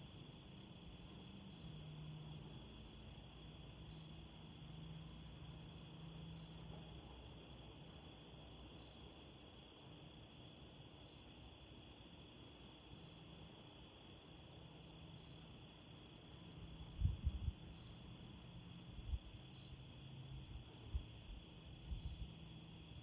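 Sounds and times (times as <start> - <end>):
crickets chirping: 0.0 - 23.0
wind buffeting microphone: 17.0 - 17.5.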